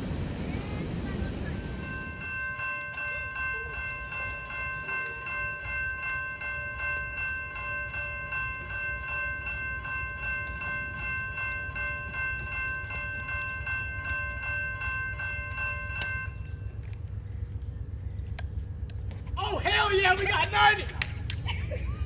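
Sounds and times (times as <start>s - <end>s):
train rumbling by: 0.0s - 18.2s
pulsing high ringing: 1.8s - 16.8s.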